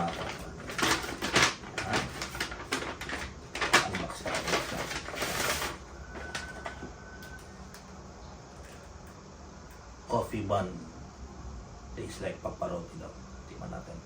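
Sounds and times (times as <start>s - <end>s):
plastic bag crinkling: 0.0s - 6.8s.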